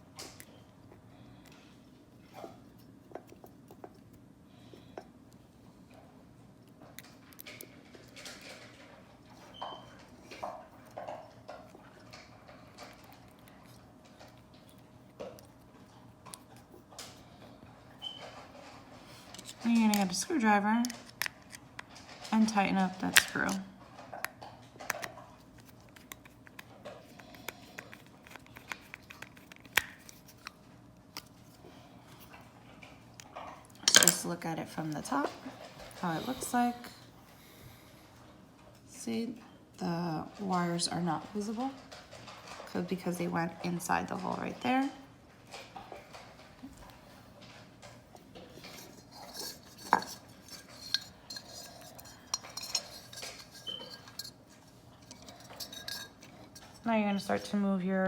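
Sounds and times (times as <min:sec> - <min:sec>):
small metal parts clinking on ceramic: 0:33.8 - 0:34.3, 0:48.6 - 0:57.6.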